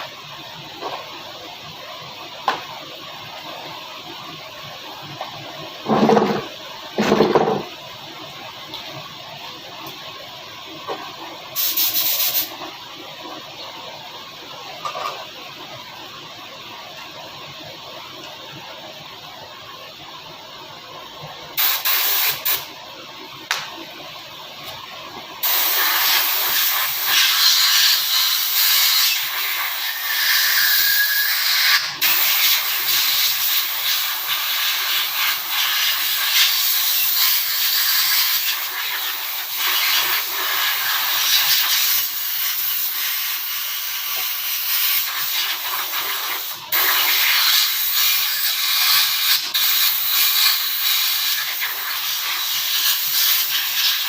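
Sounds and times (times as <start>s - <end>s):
spray hissing: 11.6s - 12.5s, 21.6s - 22.7s, 25.4s - 54.0s.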